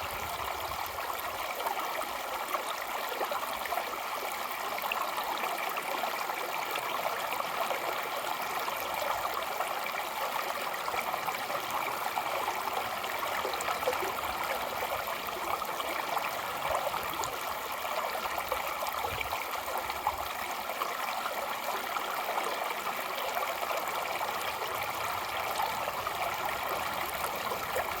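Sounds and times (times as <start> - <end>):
stream splashing over rocks: 0.0 - 28.0.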